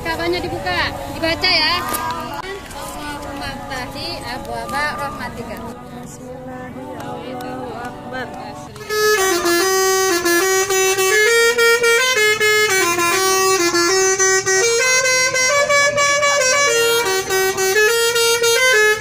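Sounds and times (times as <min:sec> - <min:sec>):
multi-tone bus air horn tune: 0:08.5 - 0:19.0.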